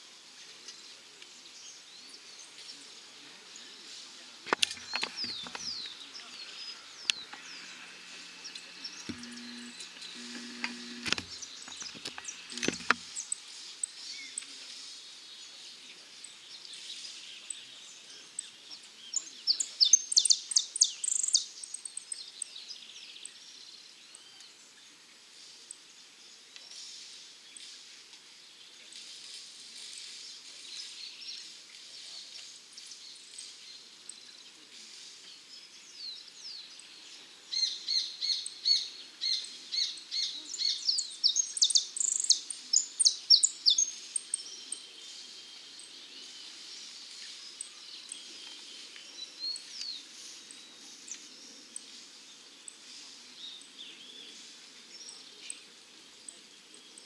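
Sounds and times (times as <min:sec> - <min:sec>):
finch singing high chirped notes: 0:37.6 - 0:44.8.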